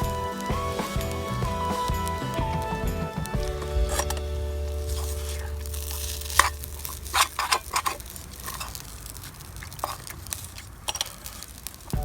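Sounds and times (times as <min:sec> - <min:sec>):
utensil scraping a frying pan: 0:03.6 - 0:08.9.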